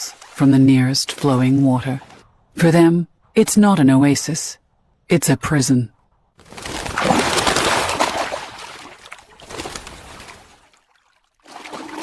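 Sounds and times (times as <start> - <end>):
crocodiles splashing water: 6.4 - 12.0.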